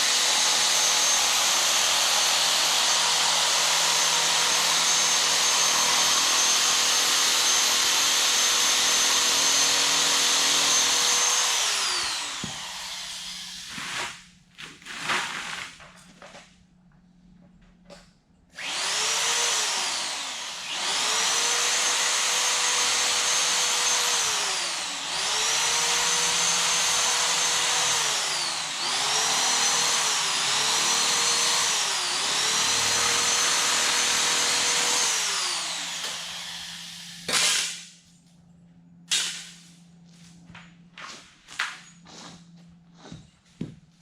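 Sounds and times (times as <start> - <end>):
power tool whining: 0.0 - 14.1, 18.6 - 37.4.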